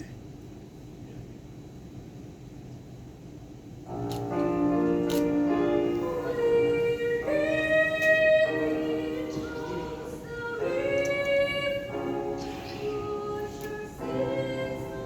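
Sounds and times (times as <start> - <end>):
children's choir singing: 5.4 - 15.0.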